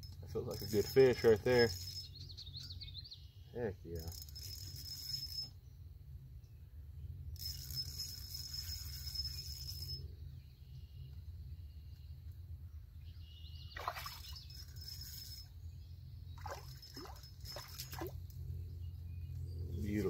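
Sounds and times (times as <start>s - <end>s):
fish splashing in water: 13.8s - 14.4s
steady low rumble: 18.1s - 20.0s.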